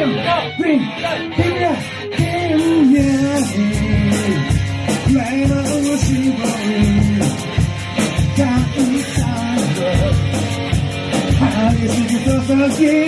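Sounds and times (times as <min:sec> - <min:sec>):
rock song with singing: 0:00.0 - 0:13.0.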